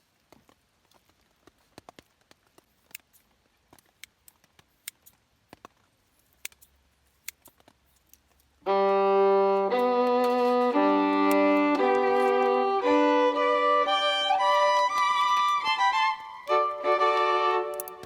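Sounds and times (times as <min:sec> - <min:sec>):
bowed violin music: 0:08.6 - 0:18.0.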